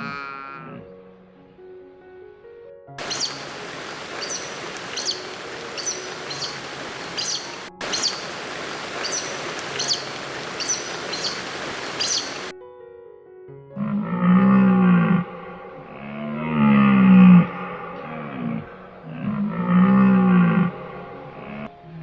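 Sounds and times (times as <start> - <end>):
bird chirping: 3.0 - 12.5
steady background hiss: 3.0 - 12.5.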